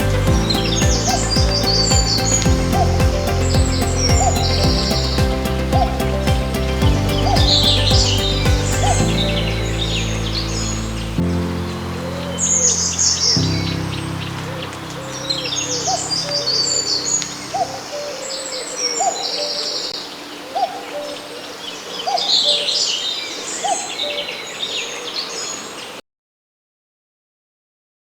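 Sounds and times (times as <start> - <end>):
background music: 0.0 - 18.3
songbird chorus: 0.0 - 26.0
cuckoo calling: 14.4 - 26.0.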